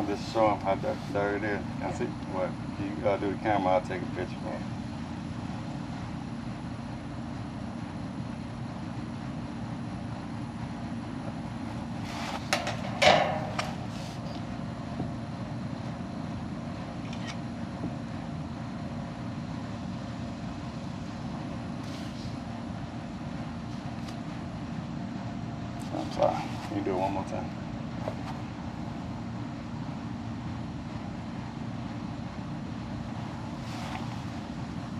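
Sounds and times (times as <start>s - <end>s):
low mechanical hum: 0.0s - 34.9s.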